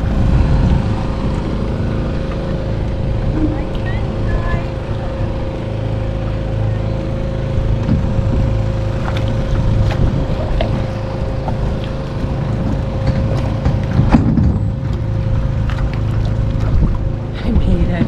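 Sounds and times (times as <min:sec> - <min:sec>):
motor humming: 0:00.0 - 0:18.0.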